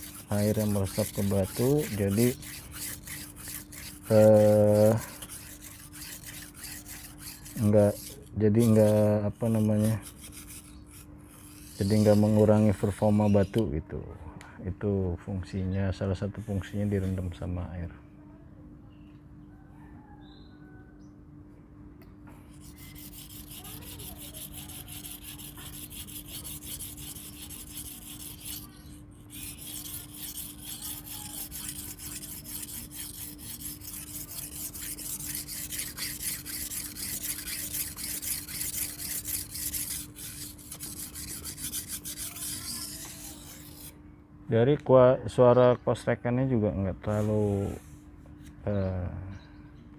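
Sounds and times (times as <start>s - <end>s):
knife scraping on whetstone: 0.0s - 13.7s, 22.5s - 44.0s.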